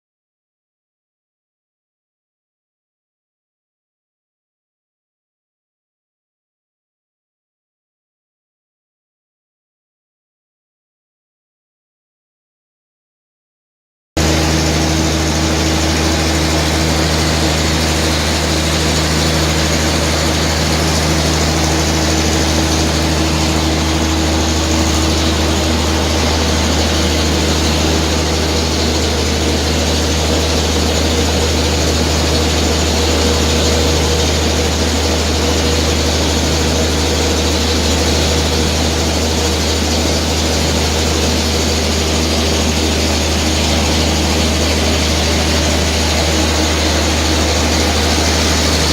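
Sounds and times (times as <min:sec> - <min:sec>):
loud machinery hum: 0:14.2 - 0:48.9
rushing blower noise: 0:14.2 - 0:48.9.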